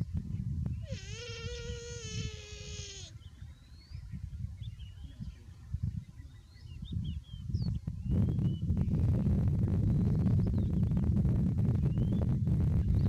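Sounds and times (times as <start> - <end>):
faint bird chirps: 0.7 - 8.7
calf bleating: 0.9 - 3.2.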